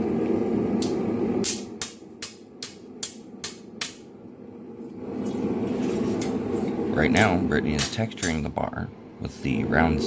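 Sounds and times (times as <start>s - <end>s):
steady low rush of noise: 0.0s - 10.0s
hammer striking steel bar: 1.4s - 4.0s.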